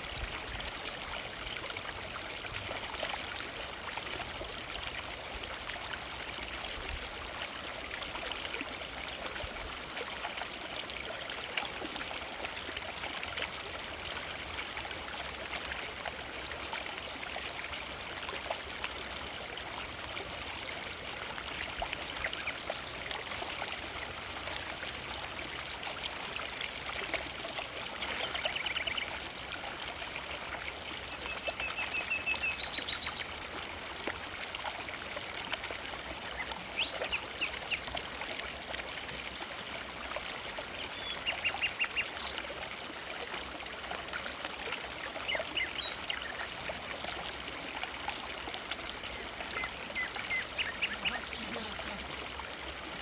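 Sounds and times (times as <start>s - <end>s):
river water flowing: 0.0s - 53.0s.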